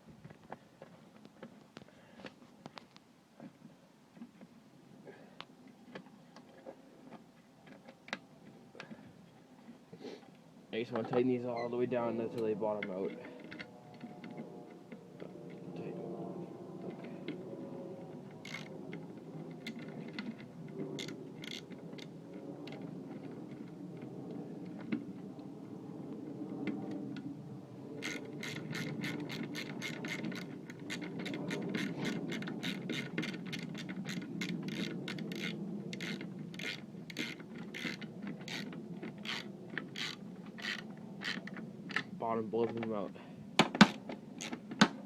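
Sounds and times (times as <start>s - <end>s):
steady low hum: 11.7s - 45.0s
ratchet wrench clicking: 18.5s - 18.7s, 28.0s - 39.4s.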